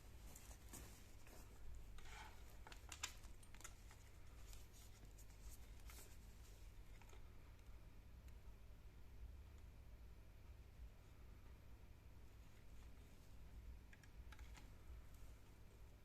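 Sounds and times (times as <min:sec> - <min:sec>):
light clicks and taps: 0:00.3 - 0:06.2.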